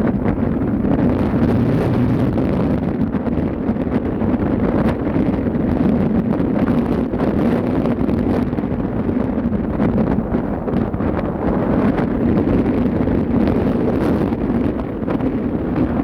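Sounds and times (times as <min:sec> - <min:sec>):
continuous low rumble: 0:00.0 - 0:16.0
wind buffeting microphone: 0:00.0 - 0:16.0.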